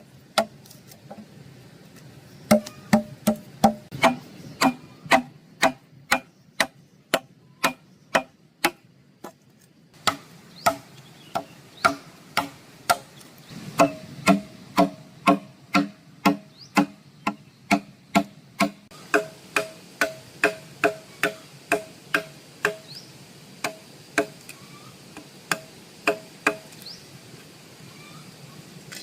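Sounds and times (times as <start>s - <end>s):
chopping strikes: 2.5s - 9.4s, 10.0s - 22.9s, 25.5s - 26.8s.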